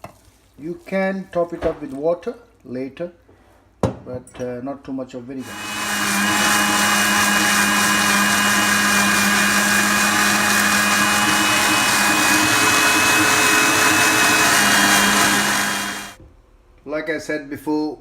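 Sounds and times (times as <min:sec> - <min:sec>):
mixer grinder grinding paste: 0:05.4 - 0:16.2.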